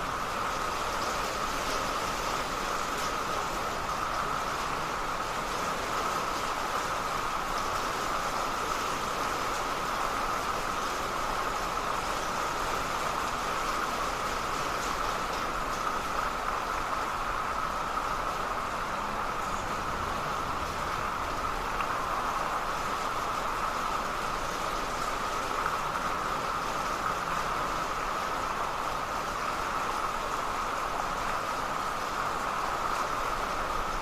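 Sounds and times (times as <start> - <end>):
steady rain falling: 0.0 - 34.0.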